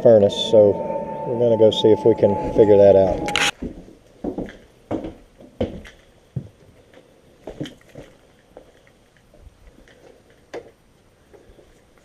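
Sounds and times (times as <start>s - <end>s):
footsteps: 2.0s - 11.9s.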